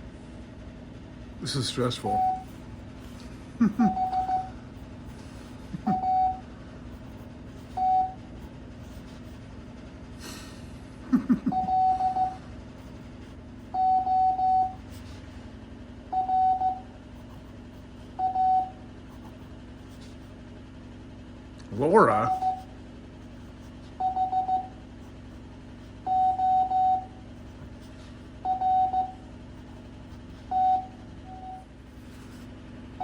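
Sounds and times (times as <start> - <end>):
morse code beeps: 3.9 - 4.5, 5.9 - 6.4, 7.8 - 8.2, 11.5 - 12.4, 13.8 - 14.8, 16.1 - 16.9, 18.2 - 18.8, 24.0 - 24.8, 26.1 - 27.2, 28.4 - 29.2, 30.5 - 31.7.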